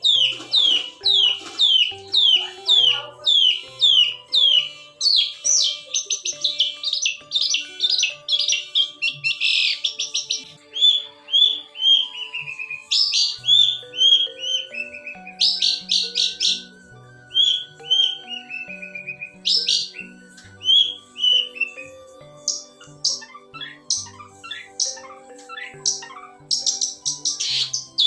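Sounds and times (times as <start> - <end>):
bird singing whistled notes: 0.0 - 28.0
harsh bird chattering: 0.0 - 28.0
quiet background music: 0.0 - 28.0.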